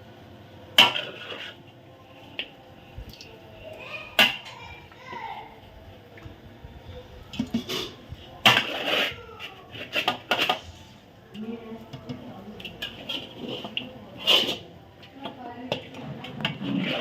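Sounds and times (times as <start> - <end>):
metal pots and utensils clanking: 0.8 - 1.6, 4.2 - 4.7, 7.3 - 10.8, 11.9 - 17.0
faint voices: 1.4 - 17.0.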